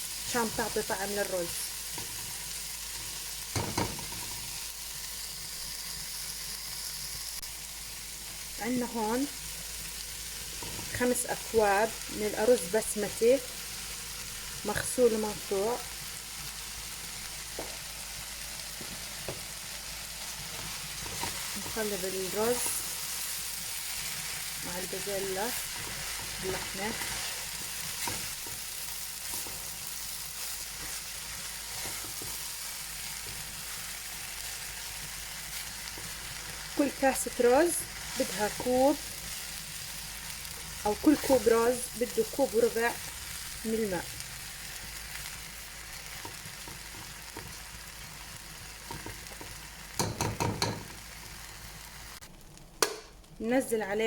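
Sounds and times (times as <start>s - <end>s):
food sizzling in a pot: 0.0s - 54.0s
spoon scraping a pot: 20.5s - 21.8s, 25.6s - 28.6s, 31.6s - 32.4s
spoon knocking a pot: 48.9s - 50.9s.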